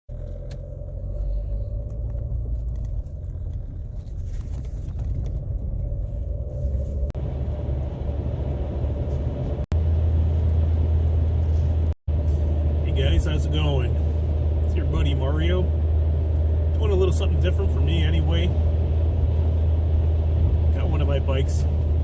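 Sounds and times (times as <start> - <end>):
car driving rumble inside cabin: 0.1 - 22.0.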